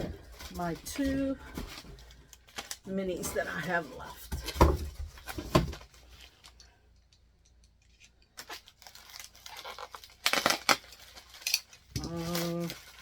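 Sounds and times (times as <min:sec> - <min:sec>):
cardboard ripping and crinkling: 0:08.4 - 0:13.0.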